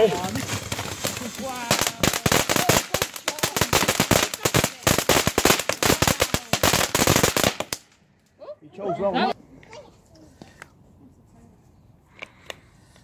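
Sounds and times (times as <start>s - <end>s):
firework cracks and bangs: 0.0s - 8.0s.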